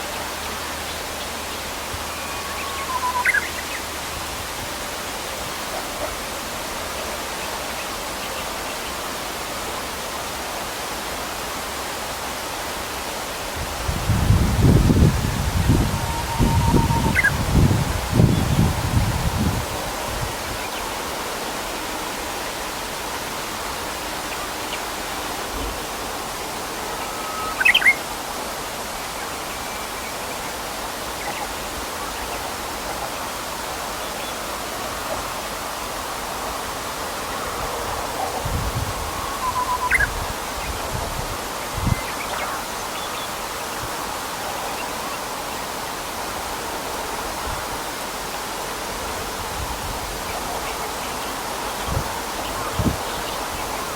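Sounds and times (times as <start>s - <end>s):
bird singing: 0.0s - 4.0s, 16.1s - 17.4s, 26.9s - 28.0s, 39.1s - 40.2s
river water rushing: 0.0s - 53.9s.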